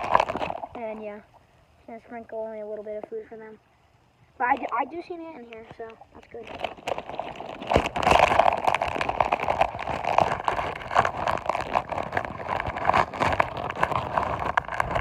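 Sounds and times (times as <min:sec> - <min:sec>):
crackers crushed in hand: 0:00.0 - 0:00.7, 0:06.4 - 0:15.0.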